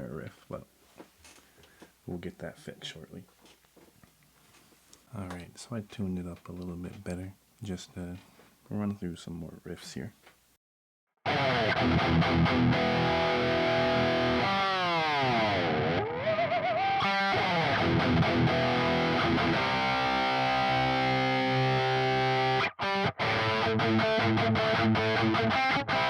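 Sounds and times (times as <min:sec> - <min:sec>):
distorted electric guitar riffs: 0:11.3 - 0:26.0.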